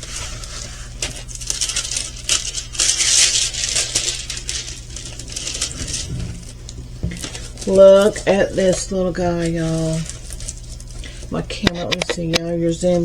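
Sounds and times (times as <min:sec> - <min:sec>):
crinkling plastic packaging: 0:00.0 - 0:13.0.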